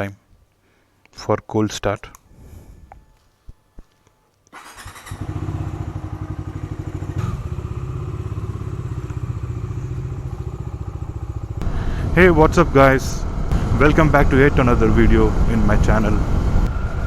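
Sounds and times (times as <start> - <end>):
motorcycle engine starting and idling: 4.5 - 17.0.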